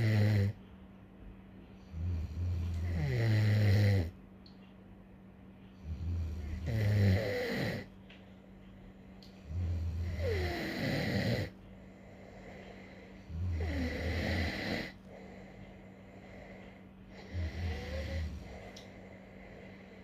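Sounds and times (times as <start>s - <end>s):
person snoring: 0.0s - 0.6s, 1.9s - 4.1s, 5.8s - 7.9s, 9.4s - 20.0s.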